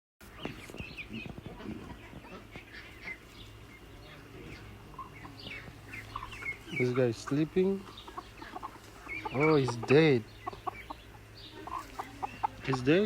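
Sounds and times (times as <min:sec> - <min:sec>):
faint bird chirps: 0:07.8 - 0:12.8.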